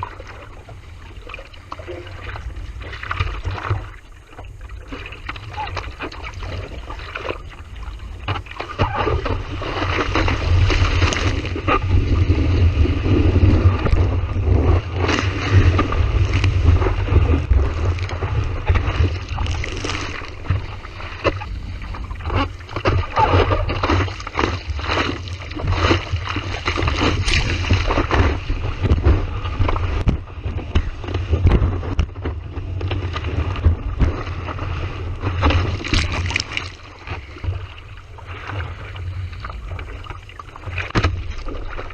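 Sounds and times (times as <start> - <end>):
wind buffeting microphone: 6.2 - 41.9
ocean surf rushing: 9.2 - 30.5.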